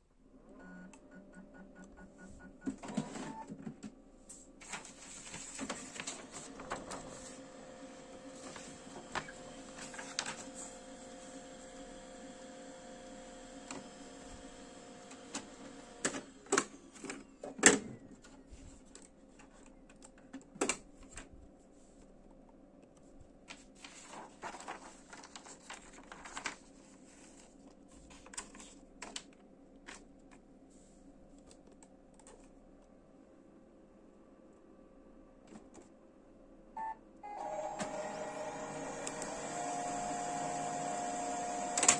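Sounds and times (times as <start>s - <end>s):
printer whirring: 5.4s - 17.0s, 37.2s - 41.9s.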